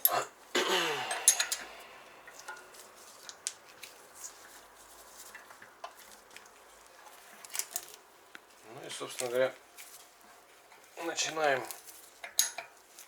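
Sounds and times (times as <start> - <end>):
metallic scrape: 0.6 - 3.3
steel tool parts clinking: 1.0 - 2.7.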